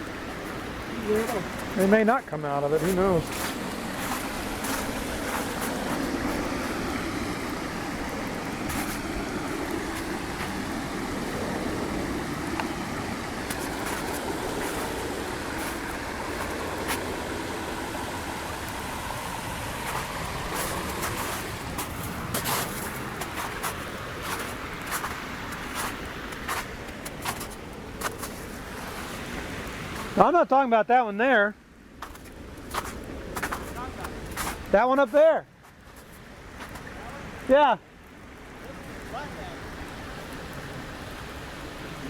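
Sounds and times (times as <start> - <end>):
waterfall rushing: 0.0 - 30.4.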